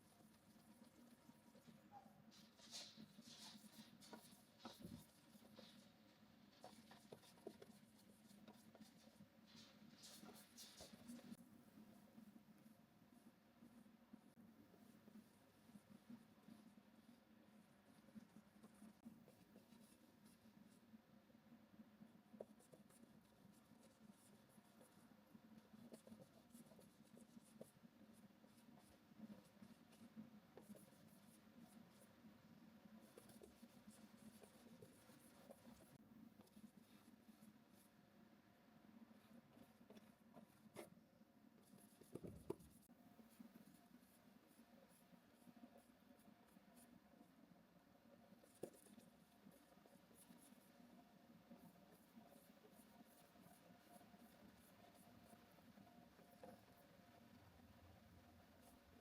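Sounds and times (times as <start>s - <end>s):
paintbrush scratching on canvas: 0.0s - 11.4s, 22.4s - 38.0s, 41.6s - 47.0s, 48.2s - 57.4s.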